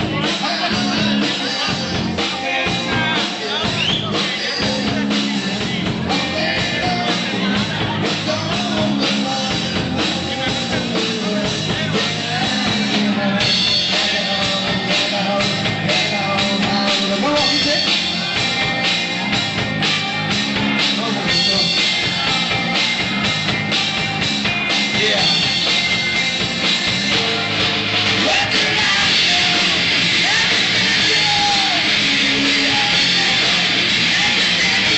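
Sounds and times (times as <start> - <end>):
person singing: 0.0 - 19.4, 28.2 - 34.9
rock band playing live: 0.0 - 34.9.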